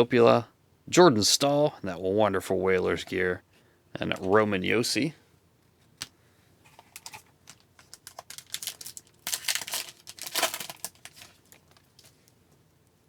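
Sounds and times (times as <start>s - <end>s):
wrapper rustling and tearing: 6.8s - 12.3s.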